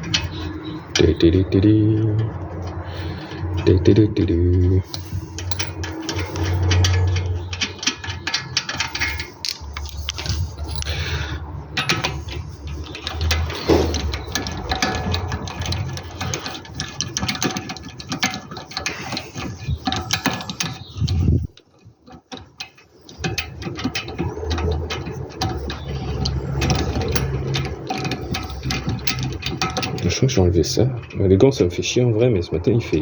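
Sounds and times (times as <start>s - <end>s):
ratchet wrench clicking: 4.9s - 21.4s, 23.2s - 30.2s.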